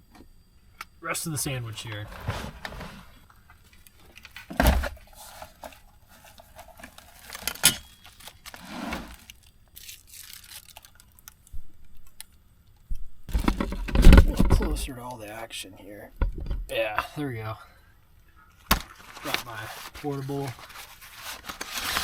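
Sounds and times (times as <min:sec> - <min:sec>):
packaging rustling and scraping: 0:01.8 - 0:11.4, 0:13.3 - 0:14.8, 0:18.6 - 0:22.0.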